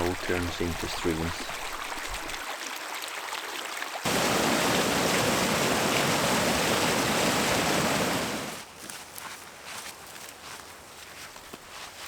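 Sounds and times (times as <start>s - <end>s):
stream water rushing: 0.0s - 8.6s.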